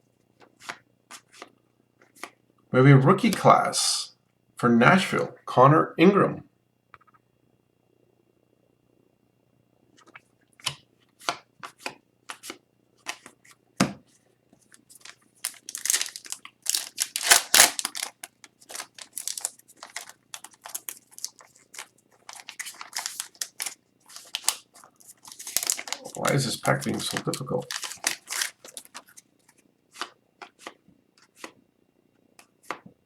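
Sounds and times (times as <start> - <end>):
wrapper crinkling: 14.7 - 29.3
card pack wrapper tearing: 14.8 - 29.2.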